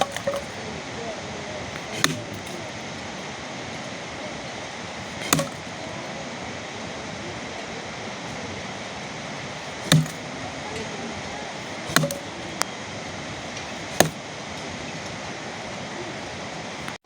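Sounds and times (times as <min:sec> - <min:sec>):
sharp knock: 0:00.0 - 0:00.6, 0:01.7 - 0:02.6, 0:05.0 - 0:05.7, 0:09.6 - 0:10.4, 0:11.6 - 0:12.4, 0:13.6 - 0:14.3
rain falling: 0:00.0 - 0:17.0.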